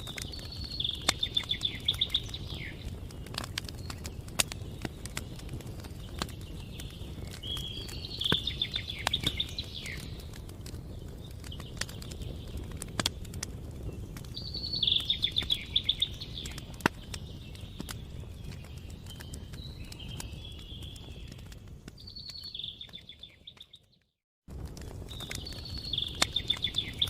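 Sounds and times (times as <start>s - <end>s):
wood fire crackling: 0.0s - 27.0s
songbird trilling: 0.3s - 2.9s, 7.4s - 10.2s, 14.4s - 16.7s, 25.4s - 27.0s.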